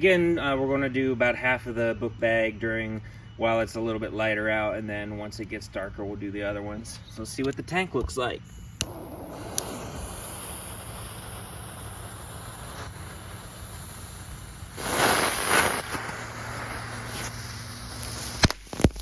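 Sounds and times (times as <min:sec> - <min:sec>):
ground firework hissing: 0:08.5 - 0:19.0.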